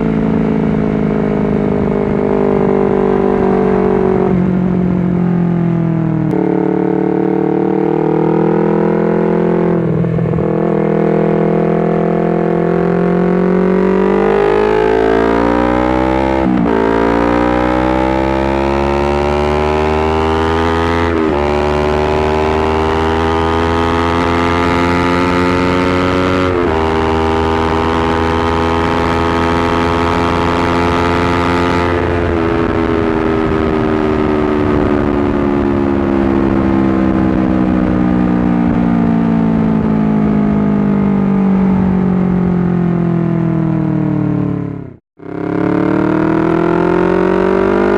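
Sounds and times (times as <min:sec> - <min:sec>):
motorcycle engine accelerating: 0:00.0 - 0:47.9.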